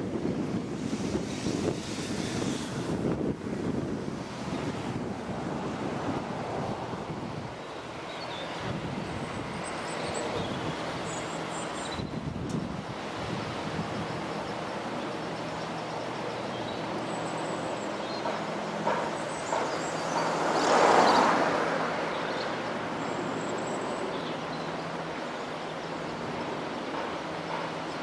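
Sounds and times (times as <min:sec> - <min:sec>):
rush of noise: 0:00.0 - 0:28.0
steam locomotive hiss: 0:00.7 - 0:03.1.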